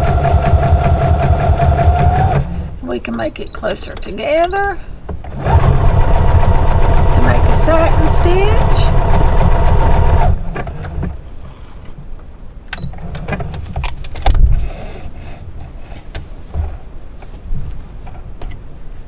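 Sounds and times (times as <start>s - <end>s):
sewing machine stitching: 0.0s - 2.8s, 5.3s - 11.1s.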